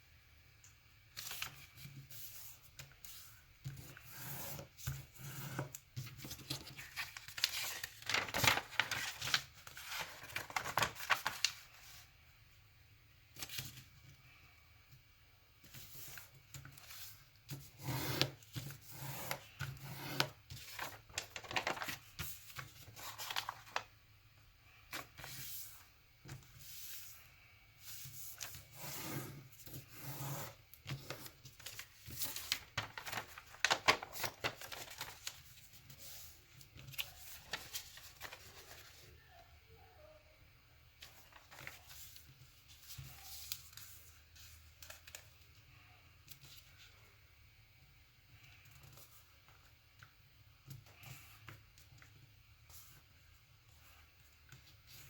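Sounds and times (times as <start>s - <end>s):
paper being folded and creased: 1.1s - 12.1s, 13.3s - 13.9s, 15.6s - 23.9s, 24.7s - 27.2s, 27.8s - 39.3s, 41.0s - 45.4s.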